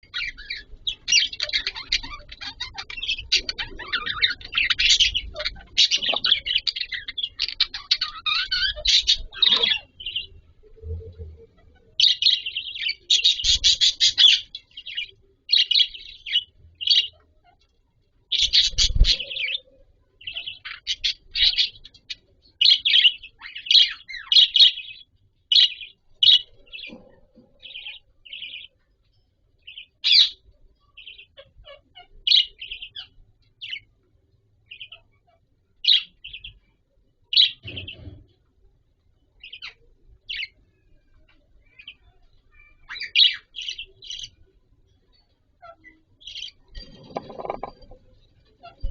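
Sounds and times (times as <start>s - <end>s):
budgerigars chirping: 0.1s - 10.4s, 11.6s - 17.2s, 18.3s - 19.6s, 45.6s - 48.0s.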